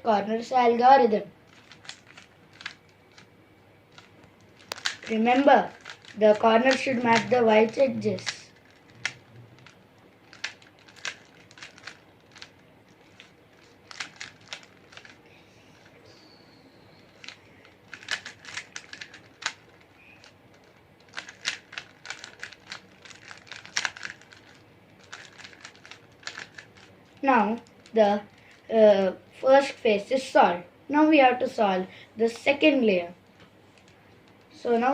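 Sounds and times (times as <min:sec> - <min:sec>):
puzzle cube plastic clicks: 0:01.5 - 0:03.3, 0:03.9 - 0:15.2, 0:17.1 - 0:26.9.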